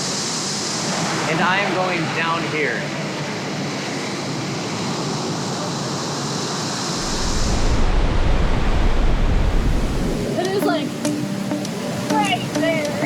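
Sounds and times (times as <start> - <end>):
waterfall roaring: 0.0 - 3.9, 6.9 - 13.0
deep rumble: 7.0 - 10.4.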